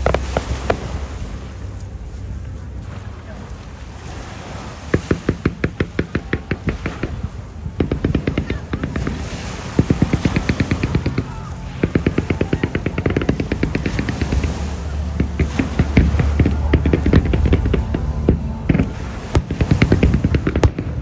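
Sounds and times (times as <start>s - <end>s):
fireworks crackling and popping: 0.0s - 1.4s, 5.0s - 21.0s
low rumble: 0.0s - 21.0s
fireworks bangs: 4.9s - 21.0s.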